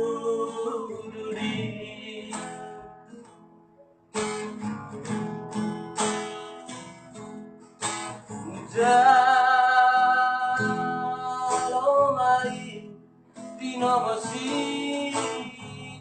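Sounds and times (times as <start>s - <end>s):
acoustic guitar strumming: 0.0s - 16.0s.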